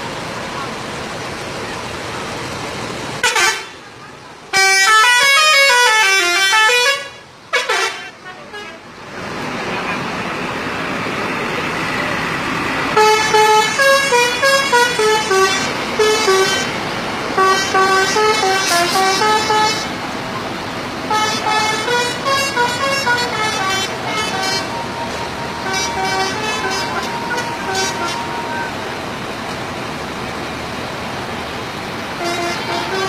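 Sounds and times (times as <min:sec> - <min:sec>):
street noise: 0:00.0 - 0:33.0
bus musical horns melody: 0:03.2 - 0:03.9, 0:04.5 - 0:08.9, 0:12.9 - 0:20.2, 0:21.0 - 0:29.6, 0:32.1 - 0:33.0.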